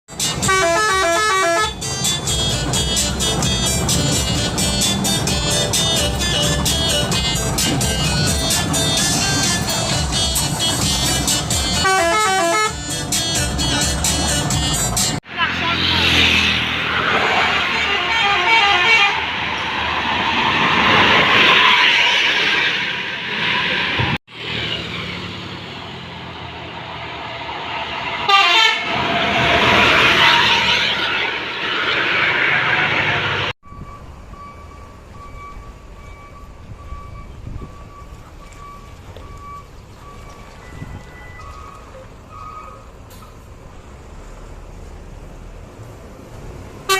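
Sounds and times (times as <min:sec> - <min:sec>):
musical multi-tone bus horn: 0:00.1 - 0:16.0, 0:17.6 - 0:19.3, 0:28.2 - 0:29.0
loud vehicle noise: 0:00.1 - 0:46.9
steady beeping tone: 0:33.6 - 0:42.7.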